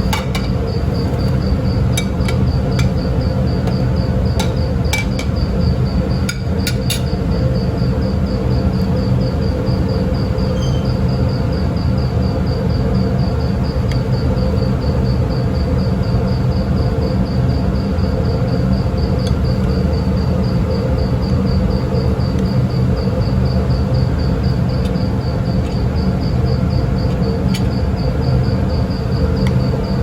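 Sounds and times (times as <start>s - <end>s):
high pulsing chirping tone: 0.0s - 14.9s
ship machinery humming: 0.0s - 30.0s.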